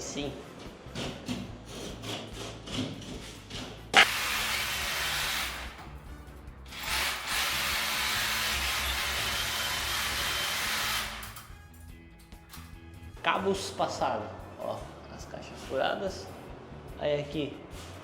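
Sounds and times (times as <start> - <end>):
electric drill running: 4.0 - 5.6, 6.7 - 11.2.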